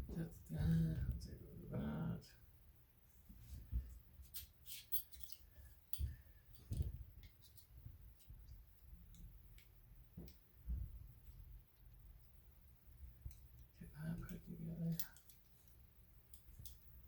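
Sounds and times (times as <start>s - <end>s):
light clicks of small parts: 13.2s - 16.9s.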